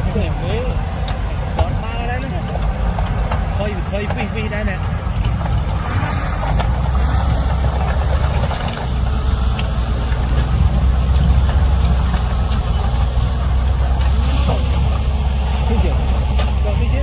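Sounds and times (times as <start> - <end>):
heavy diesel engine running: 0.0 - 17.0.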